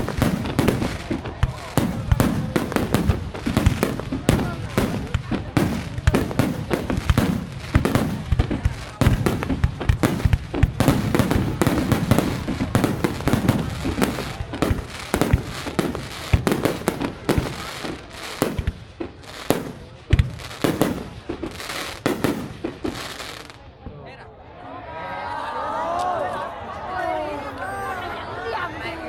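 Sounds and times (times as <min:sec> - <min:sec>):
fireworks bangs: 0:00.0 - 0:23.8
fireworks crackling: 0:00.0 - 0:23.8.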